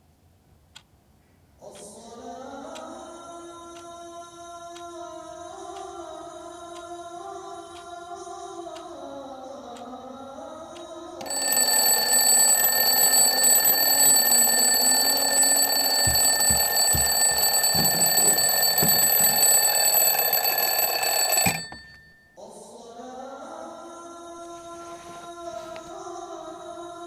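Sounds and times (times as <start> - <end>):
alarm ringing: 11.2 - 22.3.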